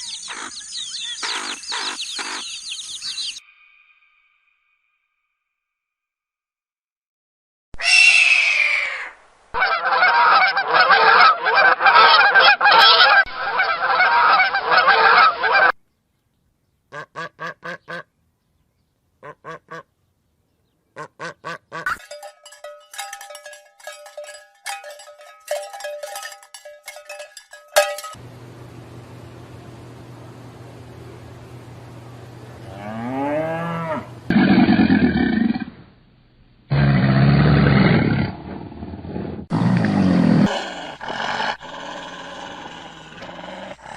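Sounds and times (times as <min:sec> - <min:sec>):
goose-like honking: 0:09.6 - 0:15.7.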